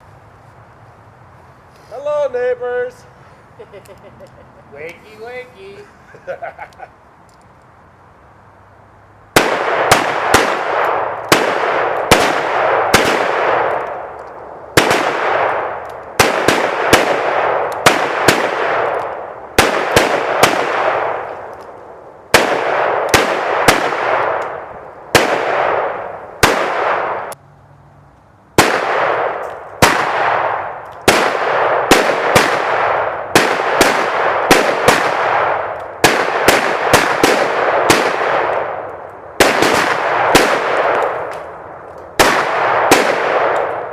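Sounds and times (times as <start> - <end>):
rapid handgun fire with echo: 9.4 - 21.5, 22.3 - 27.4, 28.6 - 43.9.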